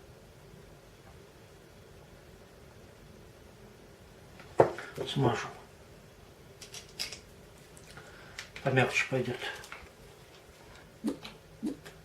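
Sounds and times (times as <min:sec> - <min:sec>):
faint steady hiss: 0:00.0 - 0:12.0.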